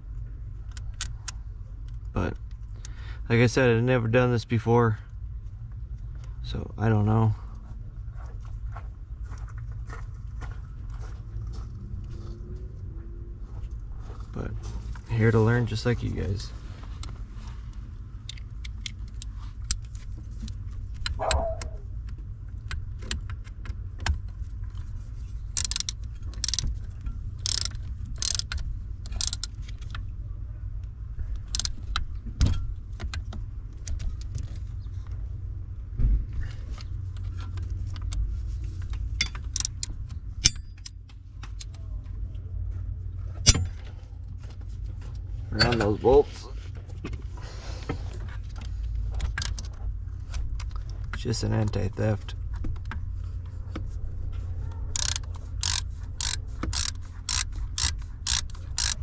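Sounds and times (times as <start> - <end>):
steady low hum: 0.0 - 59.0
metallic clicks of hand tools: 27.4 - 29.9, 55.0 - 59.0.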